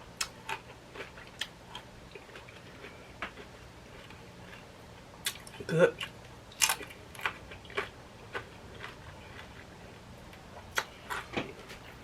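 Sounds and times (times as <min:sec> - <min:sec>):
tortilla chips crunching: 0:00.2 - 0:09.7.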